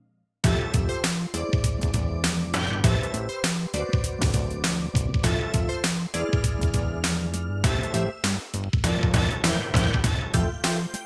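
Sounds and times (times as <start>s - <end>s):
phone ringtone tune: 0.5s - 8.3s.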